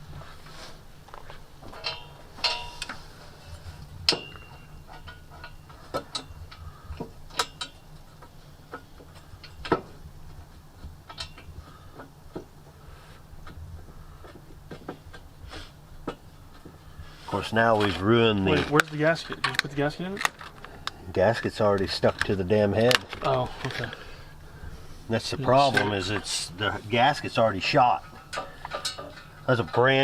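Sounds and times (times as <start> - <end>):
wrench clinking on bolts: 1.7 - 3.0, 4.1 - 8.0, 11.1 - 11.5, 28.1 - 30.0.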